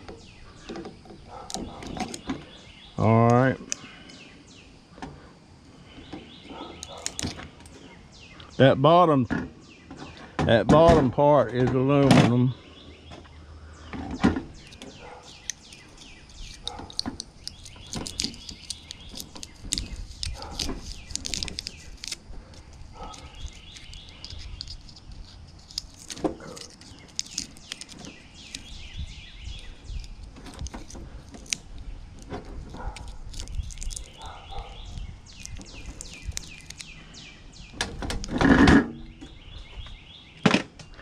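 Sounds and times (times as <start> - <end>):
birds chirping: 0.0 - 41.0
metal parts and tools clicking: 6.8 - 7.4, 14.5 - 28.8, 29.5 - 36.9.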